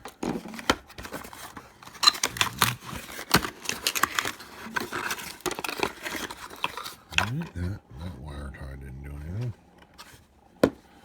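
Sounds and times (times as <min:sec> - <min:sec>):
packaging crinkling and rustling: 0:00.0 - 0:07.1.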